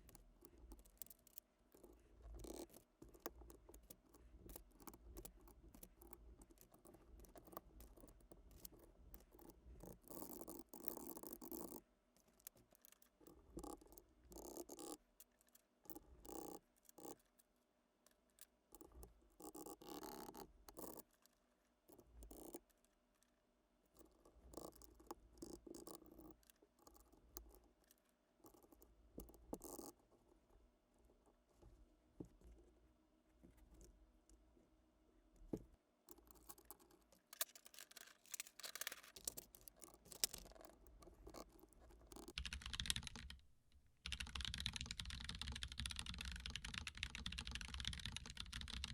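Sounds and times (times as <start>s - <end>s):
typing on mechanical keyboard: 37.4s - 39.5s, 42.1s - 48.9s.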